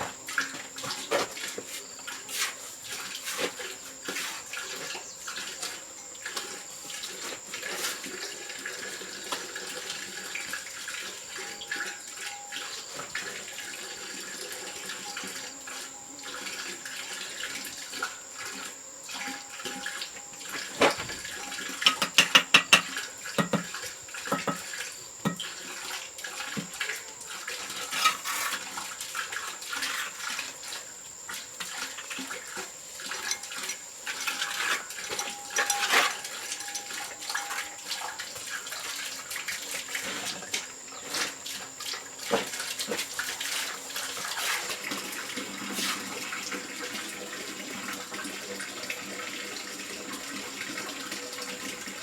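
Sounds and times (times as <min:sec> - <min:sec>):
water splashing and sloshing: 0:00.0 - 0:52.0
small knocks and clicks: 0:21.8 - 0:23.7, 0:24.3 - 0:24.7
loud sharp knocks: 0:21.9 - 0:23.7.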